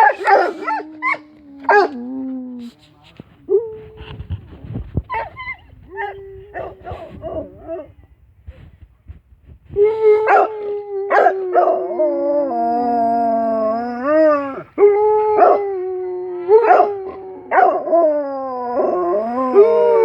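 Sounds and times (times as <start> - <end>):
dog howling: 10.0 - 20.0.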